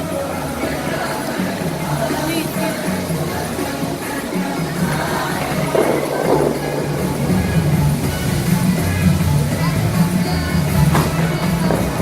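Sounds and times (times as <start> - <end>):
music with strong bass line: 0.0 - 12.0.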